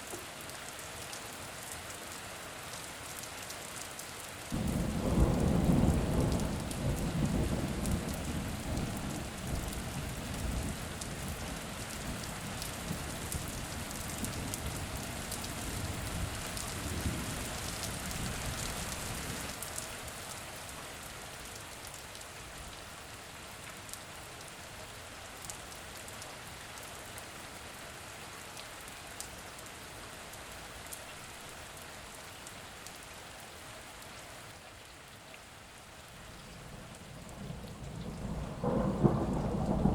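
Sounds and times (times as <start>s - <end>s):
steady rain: 0.0s - 39.9s
thunder rumbling: 4.6s - 9.7s, 36.6s - 39.9s
raindrop ticks: 36.4s - 39.9s.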